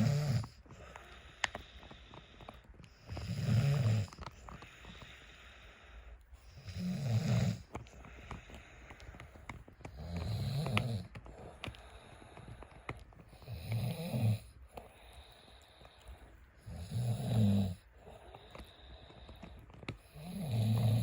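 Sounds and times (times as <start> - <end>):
man snoring: 0.0 - 0.6, 3.0 - 4.2, 6.5 - 7.7, 9.9 - 11.1, 13.4 - 14.5, 16.6 - 18.2, 20.1 - 21.0
dog gnawing a chew: 0.2 - 5.4, 7.5 - 16.7.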